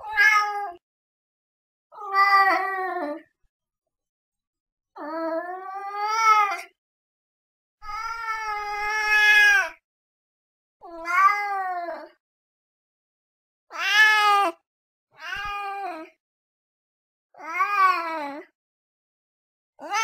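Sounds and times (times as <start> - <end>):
cat meowing: 0.0 - 0.8, 7.9 - 9.8, 10.8 - 12.1, 13.7 - 14.6, 17.4 - 18.3.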